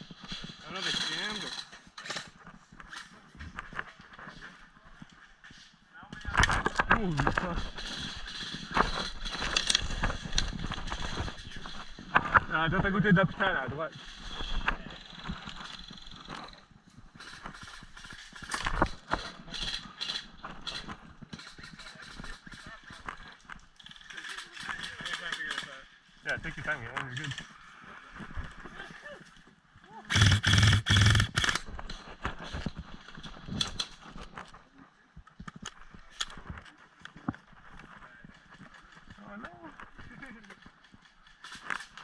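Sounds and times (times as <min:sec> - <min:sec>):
footsteps on rough ground: 0:00.0 - 0:25.3, 0:26.6 - 0:34.7.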